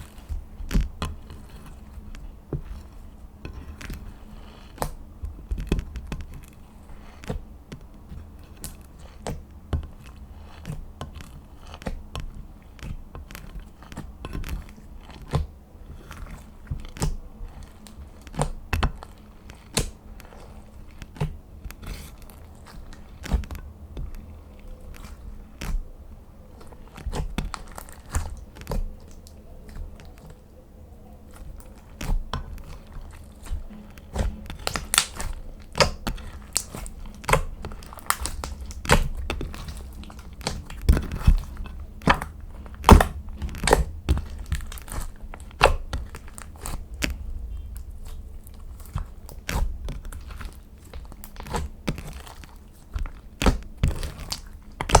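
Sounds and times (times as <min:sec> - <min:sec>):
slime popping and crackling: 0:31.2 - 0:55.0.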